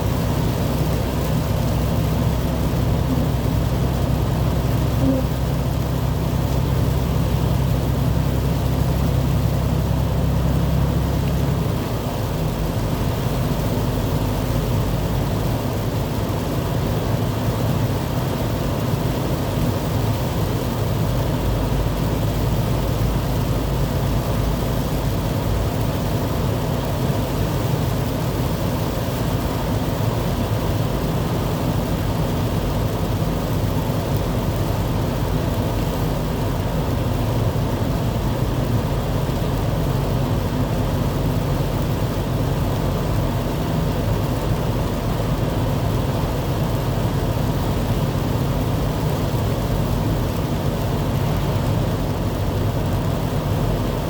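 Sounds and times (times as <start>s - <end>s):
vehicle running: 0.0s - 18.5s
constant low hum: 0.0s - 54.0s.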